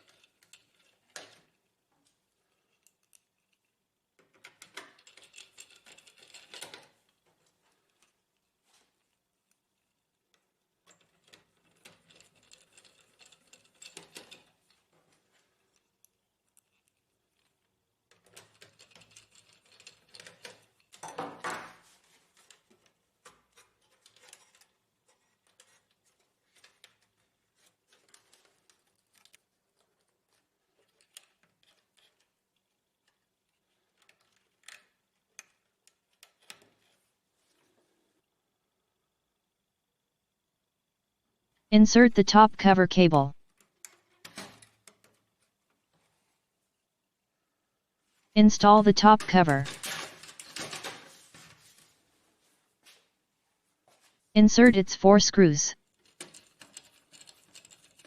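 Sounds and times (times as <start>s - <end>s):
parts and screws clicking: 56.0s - 58.0s.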